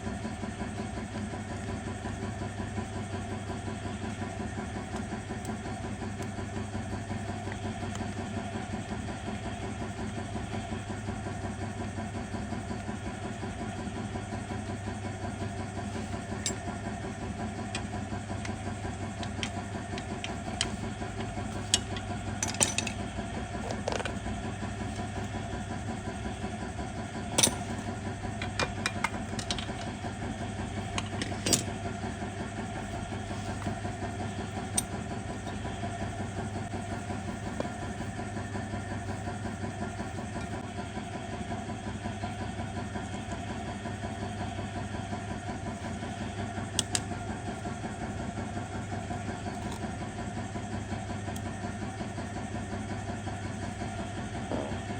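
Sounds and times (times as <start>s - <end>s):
sharp clicks and knocks: 17.7s - 25.3s, 27.3s - 31.8s, 46.8s - 47.1s.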